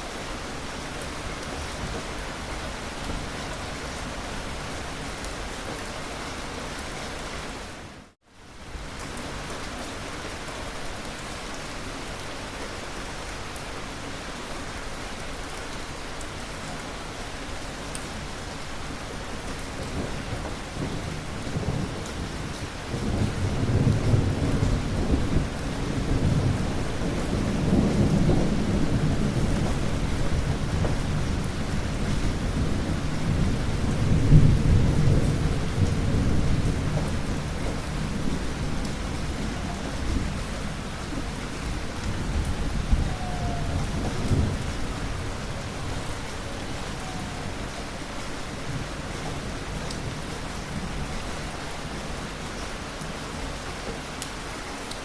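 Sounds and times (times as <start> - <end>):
steady rain: 0.0 - 55.0
thunder rumbling: 19.0 - 52.2.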